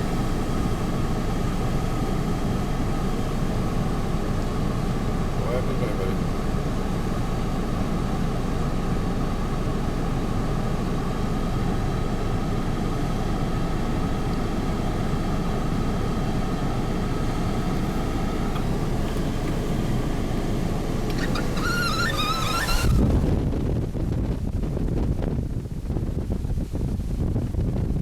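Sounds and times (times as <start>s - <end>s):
wind buffeting microphone: 21.2s - 28.0s.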